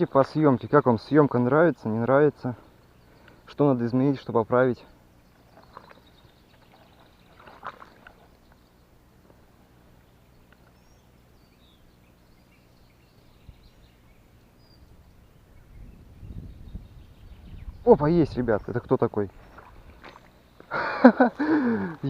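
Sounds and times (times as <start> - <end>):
faint high bird chirps: 5.0 - 9.0, 10.0 - 20.7.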